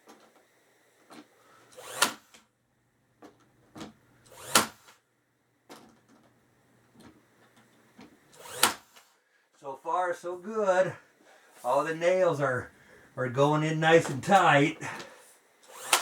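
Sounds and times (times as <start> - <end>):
nails driven into wood: 1.1 - 2.5, 3.3 - 5.0, 8.2 - 9.2, 15.6 - 16.0.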